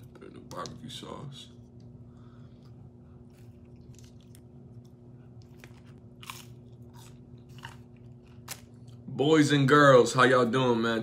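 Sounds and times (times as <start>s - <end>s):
person chewing crunchy food: 2.6s - 9.1s.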